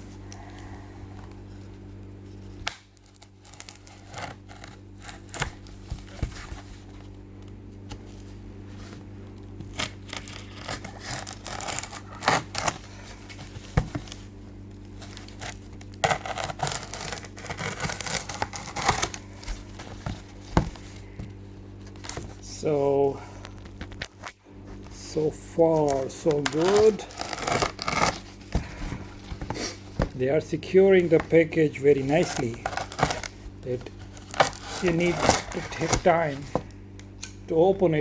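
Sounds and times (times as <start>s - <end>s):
packaging crinkling and tearing: 2.6s - 7.1s, 9.6s - 21.2s, 25.7s - 30.2s, 31.0s - 36.8s.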